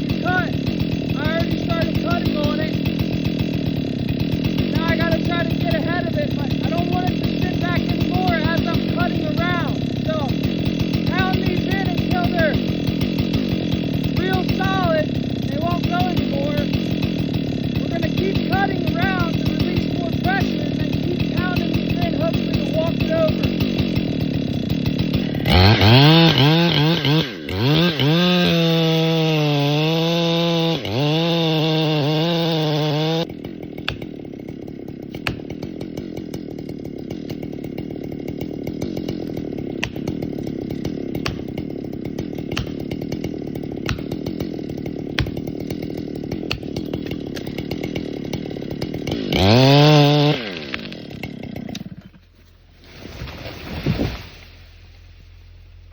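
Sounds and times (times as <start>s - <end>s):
chainsaw cutting and idling: 0.0s - 55.9s.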